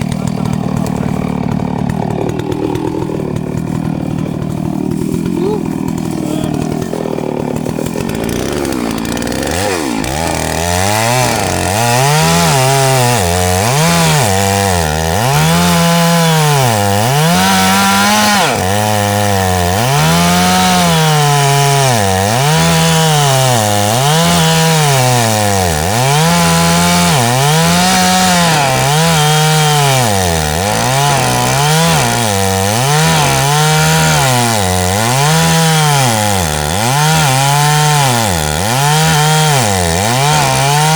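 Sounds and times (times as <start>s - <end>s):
chainsaw cutting wood: 0.0s - 40.9s.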